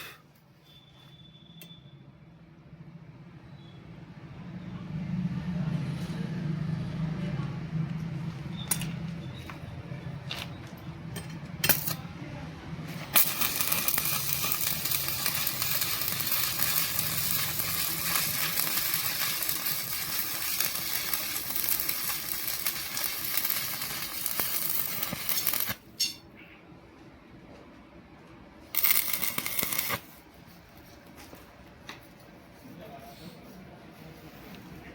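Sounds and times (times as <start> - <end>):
welding arc crackling: 12.9 - 26.1, 28.7 - 30.2.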